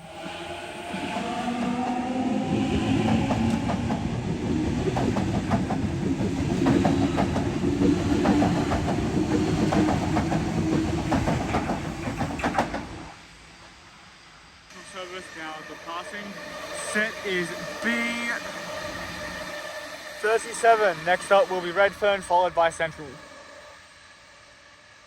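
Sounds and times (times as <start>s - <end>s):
electric train hum: 0.0s - 25.0s
train wheels clicking over rail joints: 2.9s - 13.2s.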